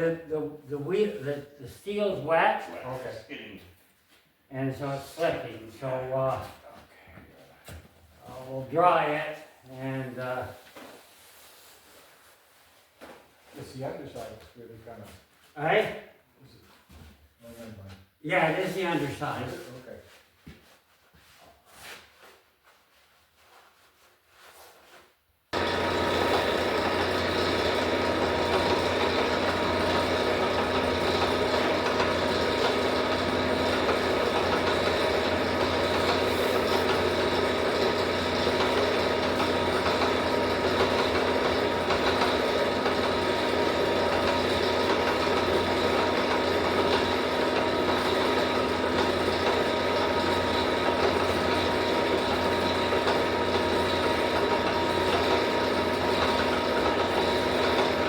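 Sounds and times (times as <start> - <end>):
machine mechanical hum: 25.6 - 58.0.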